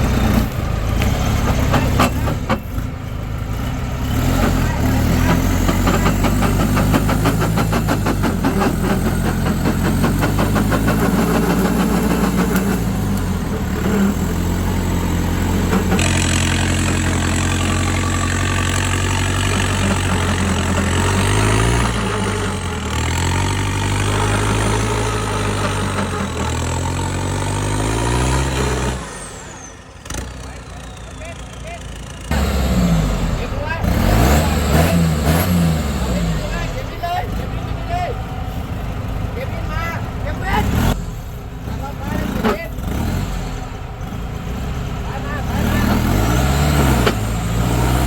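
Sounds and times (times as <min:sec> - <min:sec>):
car engine revving: 0:00.0 - 0:48.0.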